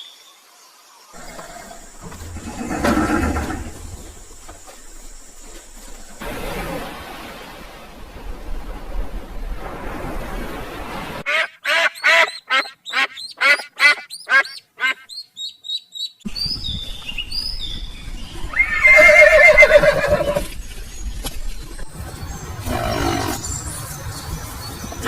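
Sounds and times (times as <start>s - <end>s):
high chirping birdsong: 11.4s - 25.0s.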